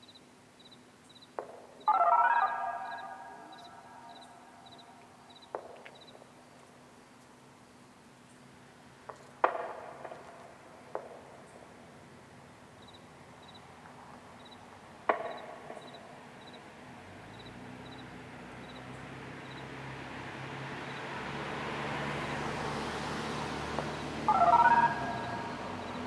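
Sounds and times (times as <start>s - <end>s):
faint high chirps: 1.9s - 5.5s, 24.3s - 26.0s
vehicle engine hum: 16.8s - 26.0s.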